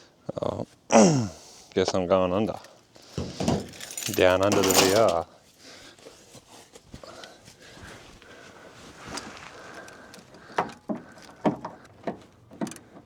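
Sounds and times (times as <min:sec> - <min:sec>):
metal tools clinking: 0:02.5 - 0:05.3.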